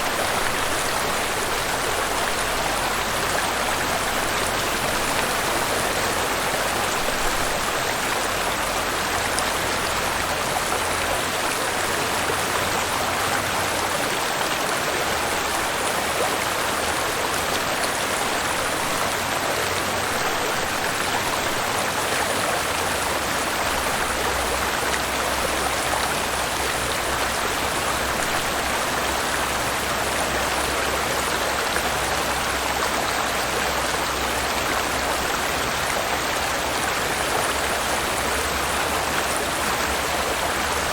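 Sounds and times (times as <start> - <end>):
waterfall and river rushing: 0.0 - 40.9.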